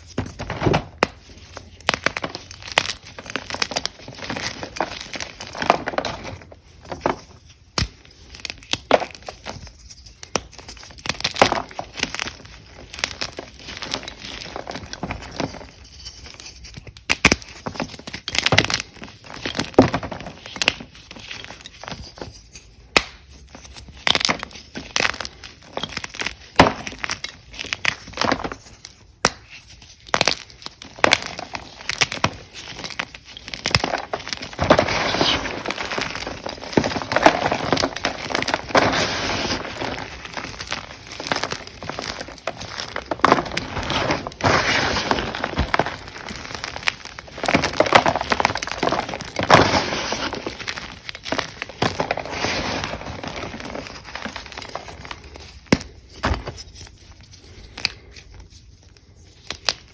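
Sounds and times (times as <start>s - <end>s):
chalk crunching by hand: 33.5s - 54.9s.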